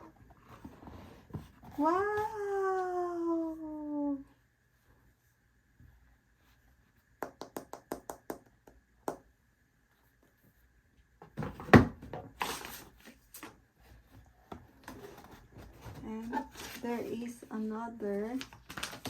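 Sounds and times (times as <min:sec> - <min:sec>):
packaging rustling: 0:18.1 - 0:19.0.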